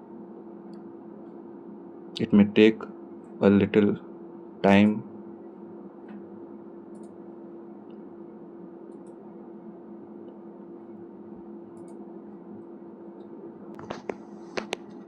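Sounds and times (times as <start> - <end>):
two-tone hum: 0.0 - 15.0.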